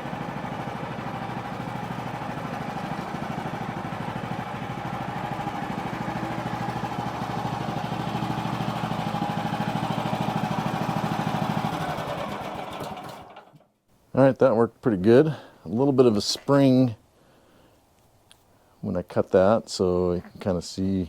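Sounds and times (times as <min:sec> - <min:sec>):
gas engine pulsing under load: 0:00.0 - 0:12.4.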